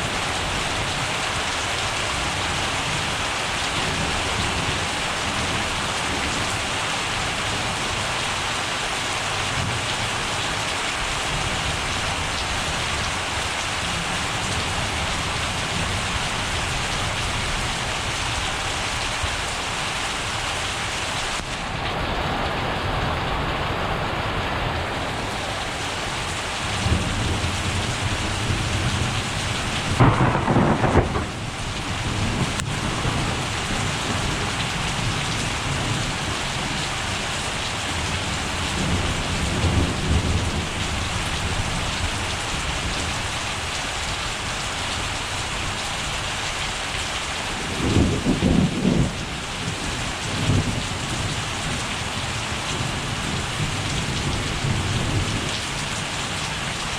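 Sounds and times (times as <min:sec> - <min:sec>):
steady rain: 0:00.0 - 0:56.9
thunder rumbling: 0:24.9 - 0:36.8.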